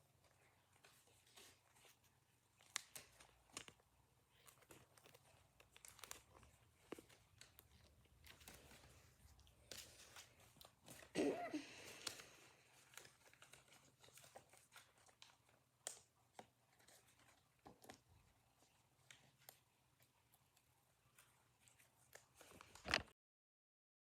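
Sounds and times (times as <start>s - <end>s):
crinkling plastic card sleeves: 0.0s - 23.1s
small clicks of cards: 2.6s - 3.8s.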